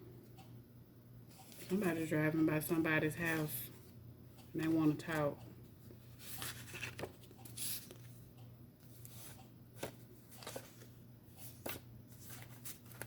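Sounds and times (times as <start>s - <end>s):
cards slapping and rustling: 6.1s - 8.1s, 9.0s - 13.0s.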